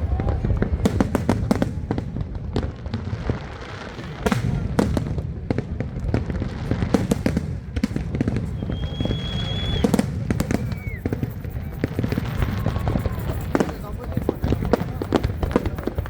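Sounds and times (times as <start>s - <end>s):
fireworks bangs and crackles: 0.0s - 16.0s
high firework whistle: 8.4s - 16.0s
falling whistle: 8.6s - 13.8s.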